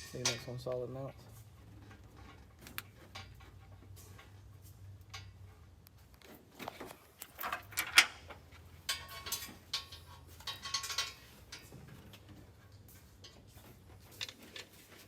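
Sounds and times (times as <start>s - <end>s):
metal tools clinking: 0.0s - 1.0s, 7.2s - 15.0s.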